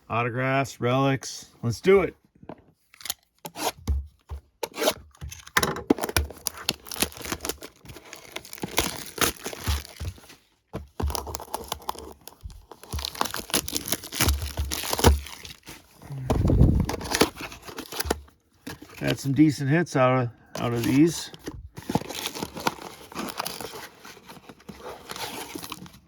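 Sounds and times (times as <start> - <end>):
plastic wrap and cardboard ripping: 6.0 - 18.2, 20.6 - 26.0.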